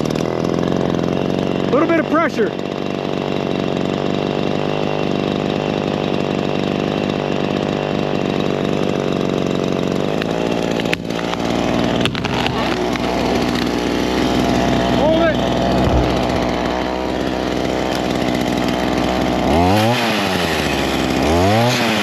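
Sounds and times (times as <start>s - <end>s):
chainsaw cutting through tree: 0.0s - 22.0s.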